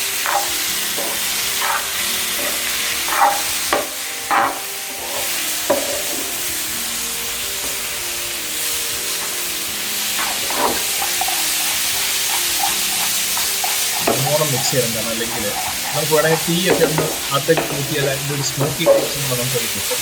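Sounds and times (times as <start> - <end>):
utensil scraping pan: 0.0 - 6.2, 10.2 - 19.4
liver sizzling in hot oil: 0.0 - 20.0.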